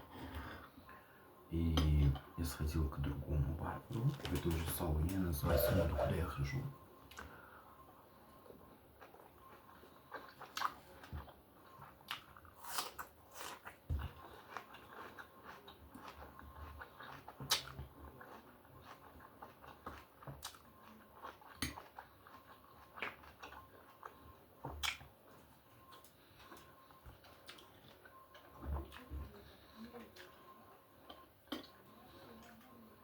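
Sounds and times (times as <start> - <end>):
person chewing: 3.9 - 6.2, 8.9 - 32.6.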